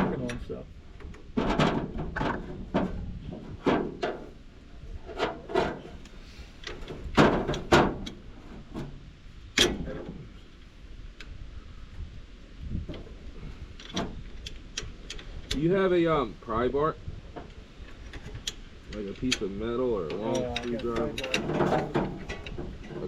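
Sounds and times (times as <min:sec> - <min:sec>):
hand tools and metal clanking: 0:17.4 - 0:23.0.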